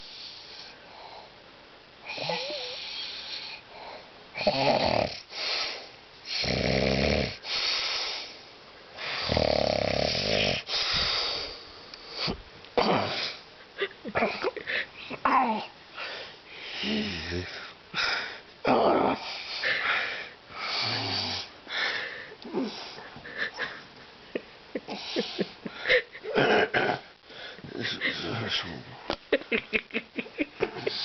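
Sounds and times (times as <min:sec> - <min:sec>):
man snoring: 0:02.1 - 0:03.6, 0:04.4 - 0:05.3, 0:06.3 - 0:07.4, 0:09.0 - 0:10.7, 0:16.8 - 0:17.6, 0:20.6 - 0:21.5
airy out-breaths: 0:10.7 - 0:12.4.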